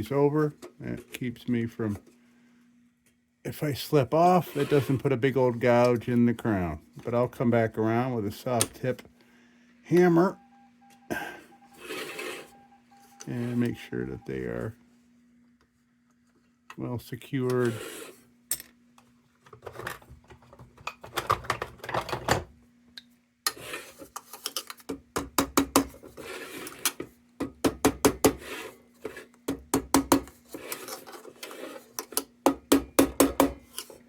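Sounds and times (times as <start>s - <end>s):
faint steady hum: 0.0s - 34.0s
hammer tapping sheet metal: 32.5s - 33.7s.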